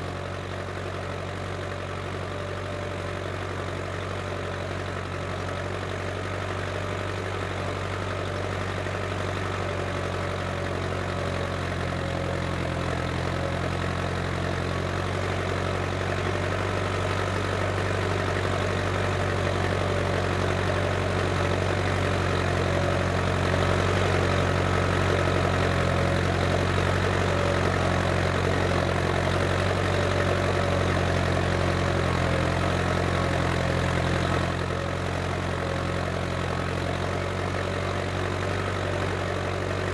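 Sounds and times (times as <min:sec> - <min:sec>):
tractor diesel engine running: 0:00.0 - 0:39.9.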